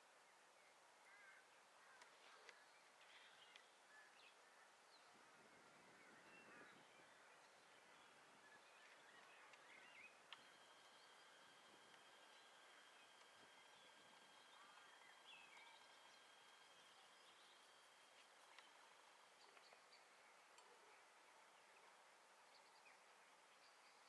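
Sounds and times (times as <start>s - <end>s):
low hiss: 0.0s - 24.0s
birds chirping: 0.3s - 24.0s
click: 3.4s - 3.7s, 10.3s - 10.5s, 18.5s - 18.8s, 19.4s - 20.8s
faint steady high tone: 6.1s - 24.0s.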